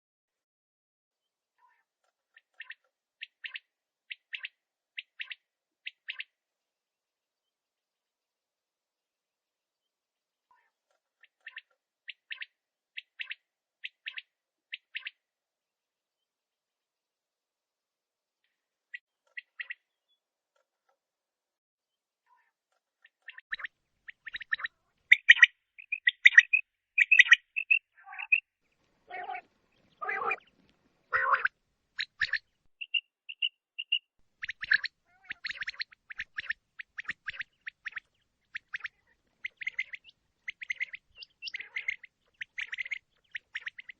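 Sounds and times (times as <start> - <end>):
quail calling: 1.6 - 6.3, 22.3 - 28.4, 29.1 - 43.9
quail singing three-note call: 25.1 - 28.4, 29.1 - 30.4.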